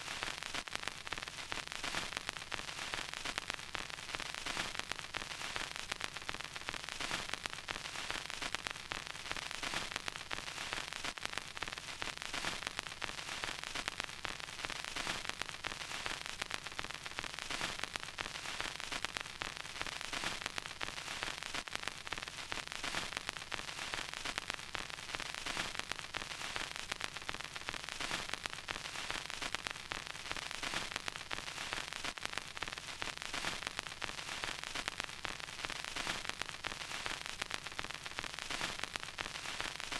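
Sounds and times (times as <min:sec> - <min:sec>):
vinyl pops and crackles: 0:00.0 - 0:39.9
vinyl record hiss: 0:00.0 - 0:39.9.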